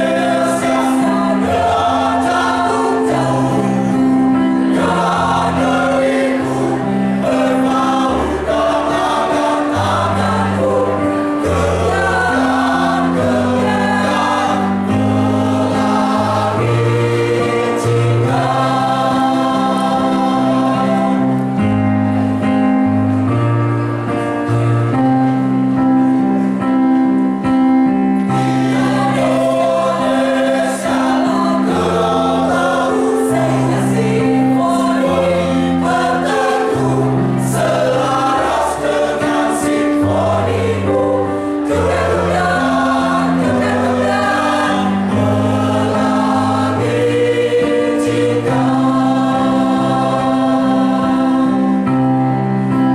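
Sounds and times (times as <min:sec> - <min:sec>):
choir singing in harmony: 0:00.0 - 0:26.9, 0:28.2 - 0:52.9
instrumental accompaniment with bass: 0:00.0 - 0:52.9.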